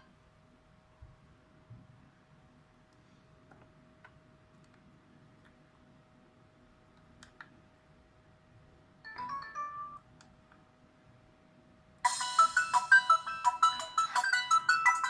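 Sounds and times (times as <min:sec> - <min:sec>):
electronic ringtone notes: 0:09.1 - 0:10.0, 0:12.1 - 0:15.0.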